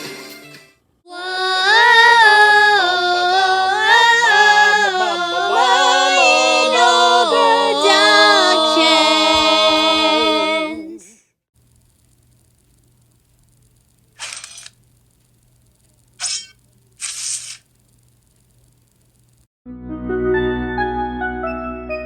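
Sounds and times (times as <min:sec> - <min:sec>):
voices singing a cappella: 0:01.1 - 0:11.2.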